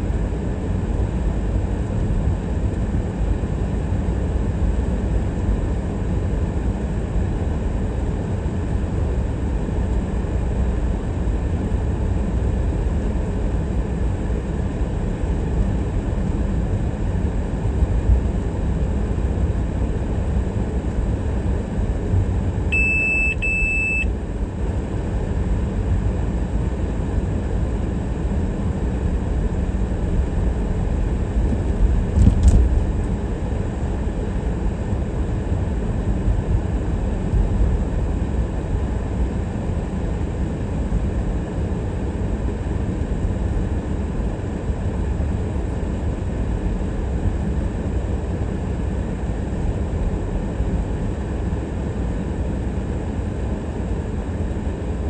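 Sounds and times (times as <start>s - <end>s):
short high electronic beep: 22.7s - 24.1s
brief knock: 32.2s - 32.7s.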